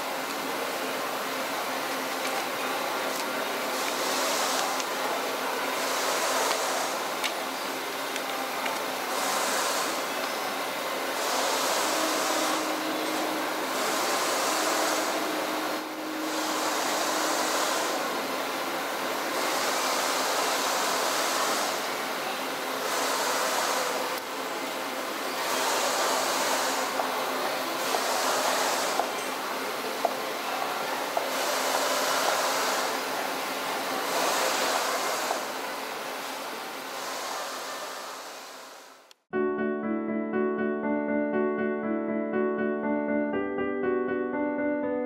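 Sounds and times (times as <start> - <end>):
metalworking machinery running: 0.0 - 39.1
hiss: 3.6 - 7.4, 9.0 - 24.2, 25.3 - 29.2, 30.6 - 39.1.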